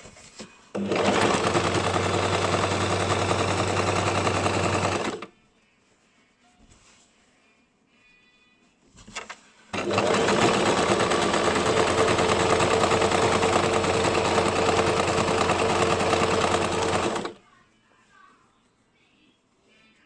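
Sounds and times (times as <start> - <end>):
sewing machine stitching: 0.8 - 5.3, 9.7 - 17.4.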